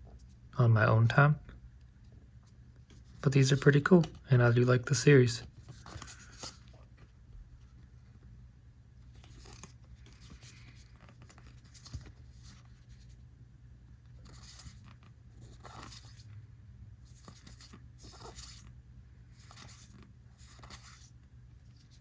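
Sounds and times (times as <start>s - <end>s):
cards sliding over cards: 5.6s - 7.1s.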